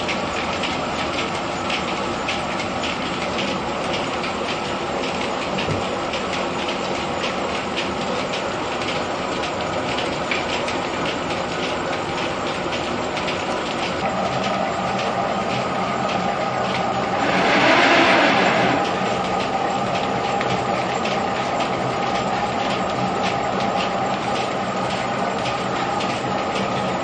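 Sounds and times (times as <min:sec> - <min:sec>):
threshing machinery clattering: 0:10.1 - 0:22.2
loud rushing noise: 0:17.1 - 0:19.2.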